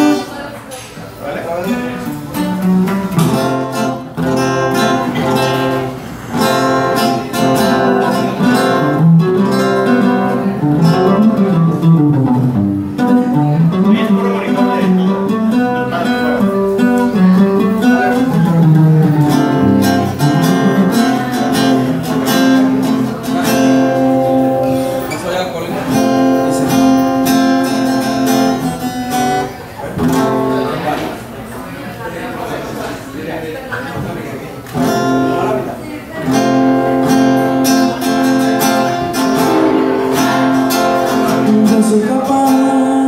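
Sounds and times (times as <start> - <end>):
strummed acoustic guitar: 0.0 - 31.3, 34.7 - 43.0
walking bass line: 16.6 - 24.6.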